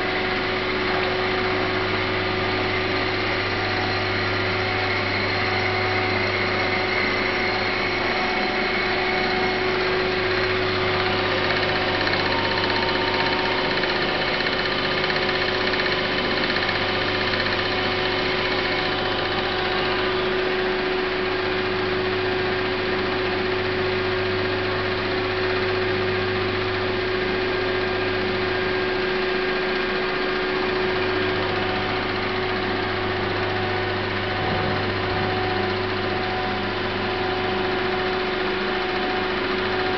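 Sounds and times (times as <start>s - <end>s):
steady machine tones: 0.0s - 21.2s, 30.2s - 39.9s
lathe machine hum: 0.0s - 39.9s.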